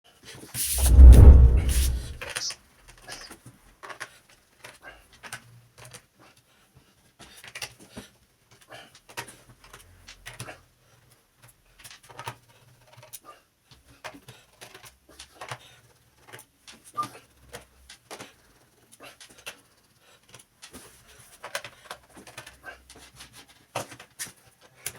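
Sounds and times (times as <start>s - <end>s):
loud thump: 0.7s - 2.2s.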